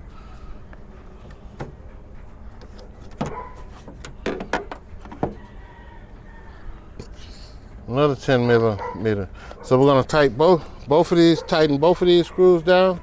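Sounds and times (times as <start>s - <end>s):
steady low hum: 0.0s - 13.0s
clicks and knocks of plastic lid: 2.6s - 5.4s.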